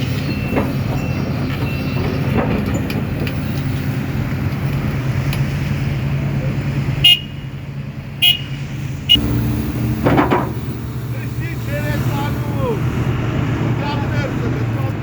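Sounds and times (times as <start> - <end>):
excavator diesel engine running: 0.0 - 7.0, 7.6 - 15.0
sharp metallic knocks ringing: 9.2 - 12.6.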